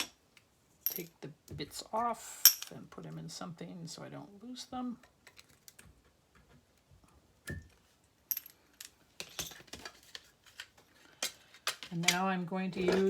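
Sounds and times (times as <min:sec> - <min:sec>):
small metal parts clinking: 0:00.8 - 0:01.2, 0:02.4 - 0:02.8, 0:08.3 - 0:09.8.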